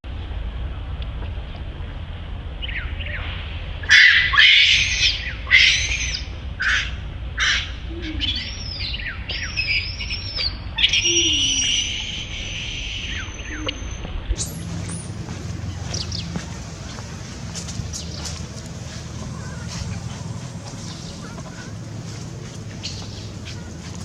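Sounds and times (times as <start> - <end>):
baby monkey screaming: 3.9 - 8.8, 10.8 - 13.2.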